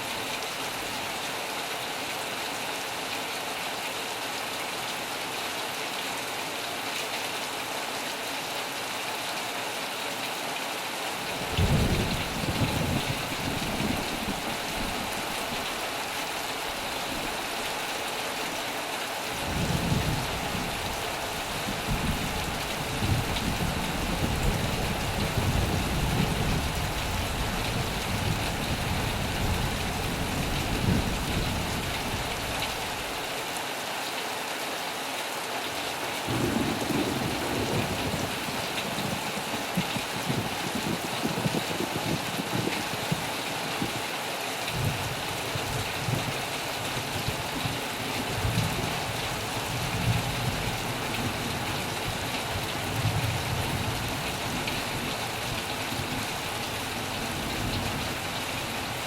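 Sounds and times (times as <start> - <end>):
heavy rain on a metal roof: 0.0 - 59.0
thunder rumbling: 11.3 - 15.1, 36.3 - 43.2.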